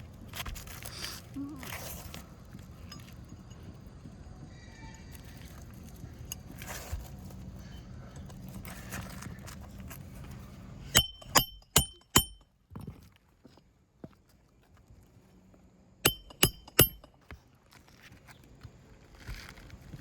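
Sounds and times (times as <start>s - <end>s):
rustling of shingles: 0.0s - 4.0s, 5.1s - 11.0s, 17.2s - 20.0s
hammer striking nail: 10.9s - 12.4s, 16.1s - 17.1s.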